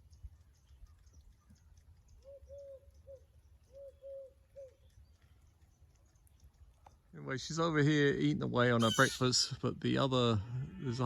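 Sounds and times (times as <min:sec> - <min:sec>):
bird hooting faintly: 0:02.2 - 0:04.8, 0:08.8 - 0:09.4.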